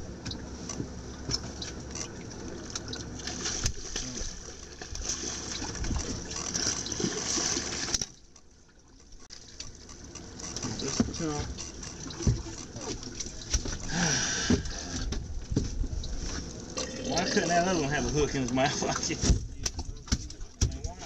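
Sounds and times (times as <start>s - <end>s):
water splashing and trickling: 0.0s - 21.0s
small knocks: 9.0s - 13.9s, 18.5s - 21.0s.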